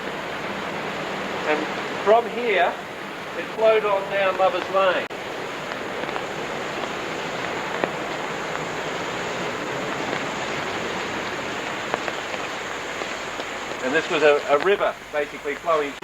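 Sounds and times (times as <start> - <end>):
flowing water rushing: 0.0 - 16.0
faint ticks: 5.6 - 9.4.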